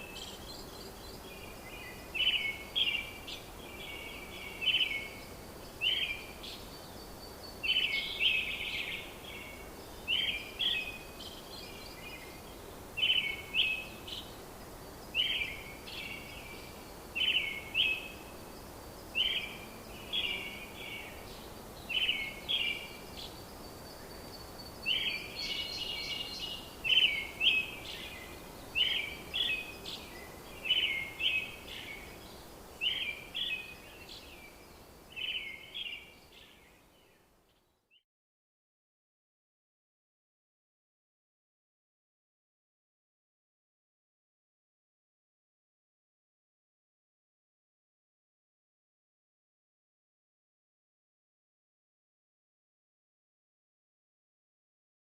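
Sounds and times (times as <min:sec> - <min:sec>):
bird chirping: 0:00.0 - 0:14.4, 0:15.0 - 0:38.0
faint outdoor hiss: 0:00.0 - 0:38.0.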